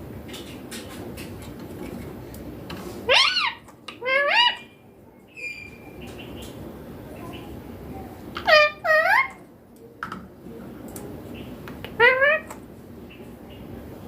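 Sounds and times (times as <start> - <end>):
parakeet high-pitched calls: 3.1 - 6.4, 8.4 - 9.4, 12.0 - 12.5.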